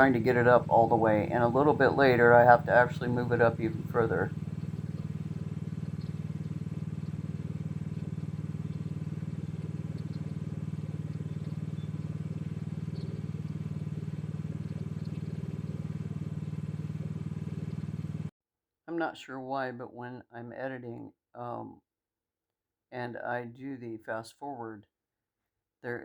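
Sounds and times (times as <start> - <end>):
excavator engine running: 0.0 - 10.1.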